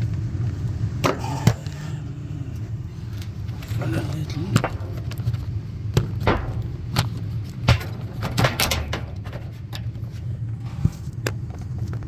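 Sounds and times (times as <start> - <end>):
steady low hum: 0.0 - 12.0
tools and metal parts clicking: 3.1 - 10.4.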